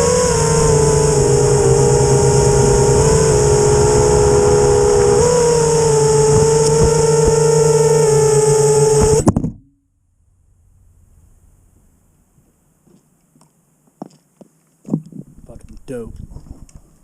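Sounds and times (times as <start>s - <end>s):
drone motors whining: 0.0s - 9.4s.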